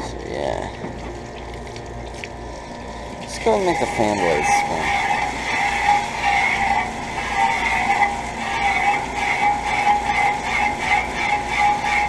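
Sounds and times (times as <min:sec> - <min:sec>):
hose spray on spinning fan blades: 0:03.3 - 0:12.0.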